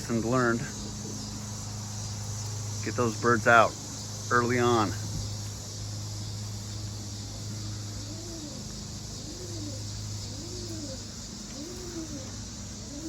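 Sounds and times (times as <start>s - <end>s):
pigeon cooing: 0.6s - 2.6s, 6.5s - 13.0s.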